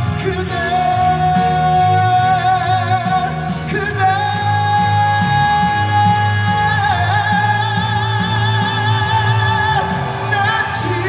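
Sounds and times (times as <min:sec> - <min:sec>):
man singing with vibrato: 0:00.0 - 0:11.0.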